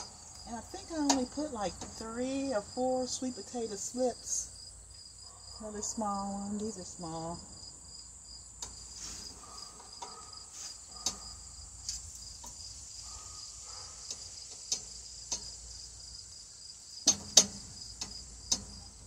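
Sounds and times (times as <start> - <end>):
high-pitched insect trilling: 7.0 - 18.6.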